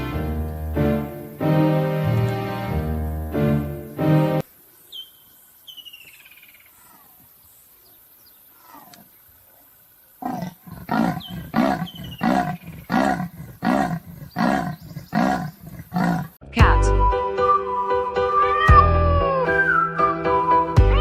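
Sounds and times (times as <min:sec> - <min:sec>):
faint bird chirps: 0:04.7 - 0:09.4, 0:10.7 - 0:13.0
leopard rasping grunts: 0:10.2 - 0:16.4.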